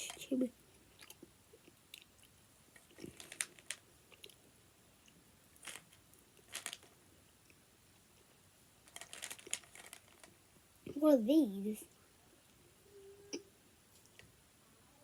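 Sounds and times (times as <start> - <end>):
chewing mouth clicks and crunches: 0.9 - 3.5.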